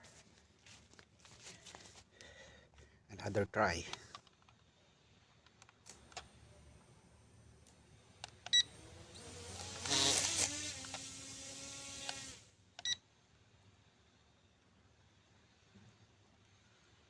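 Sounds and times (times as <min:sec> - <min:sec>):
drone propeller motors whirring: 0:05.9 - 0:12.5
short electronic beeps: 0:08.5 - 0:08.8.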